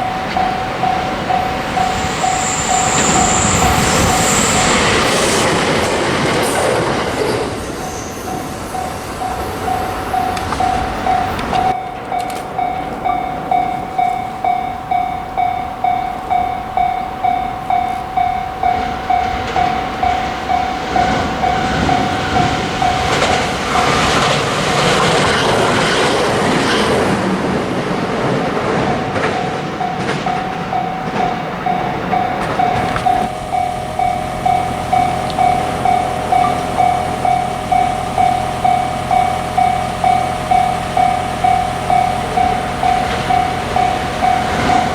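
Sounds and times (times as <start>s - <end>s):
level crossing bell clanging: 0.0s - 26.3s, 28.0s - 44.9s
train wheels rushing: 0.0s - 44.9s.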